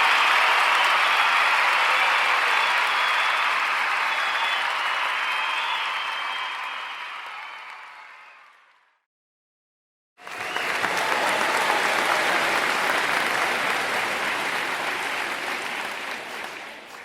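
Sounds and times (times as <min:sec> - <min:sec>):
crowd applauding: 0:00.0 - 0:08.9, 0:10.2 - 0:17.0.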